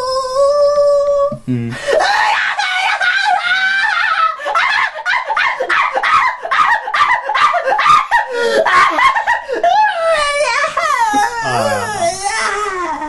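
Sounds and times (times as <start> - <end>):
person making squeaky vocal noises: 0.0 - 1.8, 11.1 - 13.0.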